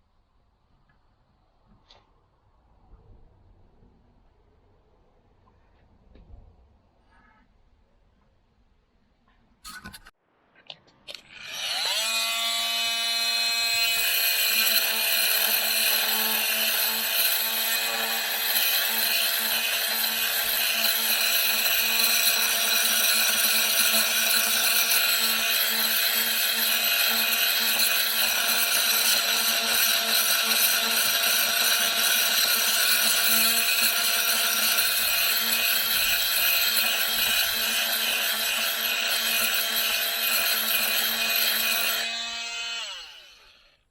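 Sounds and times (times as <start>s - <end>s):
oscillating multi-tool sawing: 11.1s - 43.9s.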